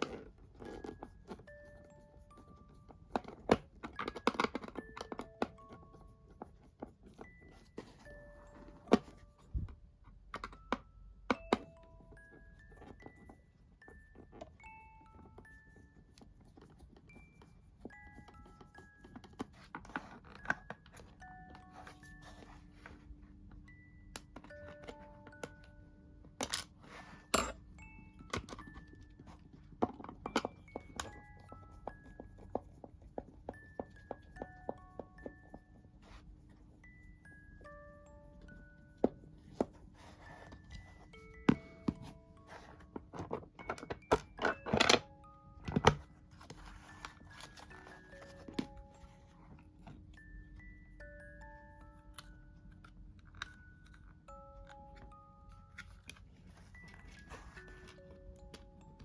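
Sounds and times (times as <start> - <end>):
soft chime-like music: 0.0 - 59.0.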